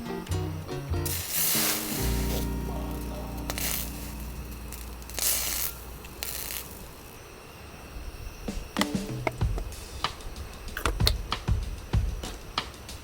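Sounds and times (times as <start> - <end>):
background music low note: 0.0 - 6.2
food sizzling in a hot pan: 1.0 - 7.2.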